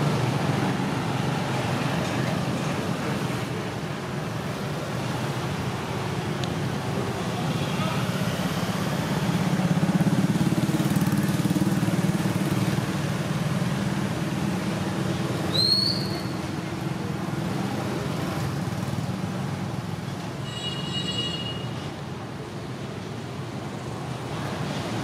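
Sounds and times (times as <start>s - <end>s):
short high-pitched squeak: 15.5s - 16.4s, 20.4s - 21.9s.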